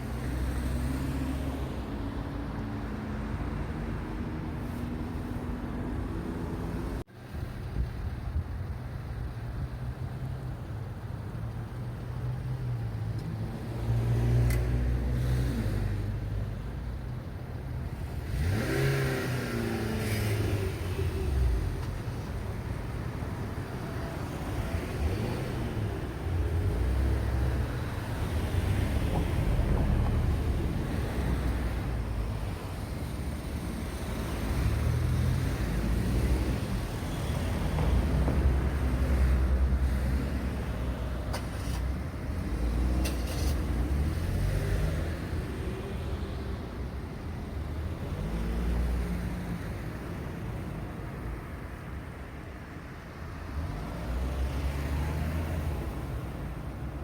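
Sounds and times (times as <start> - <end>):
cars passing: 0.0 - 57.0
vehicle accelerating away: 18.2 - 21.8.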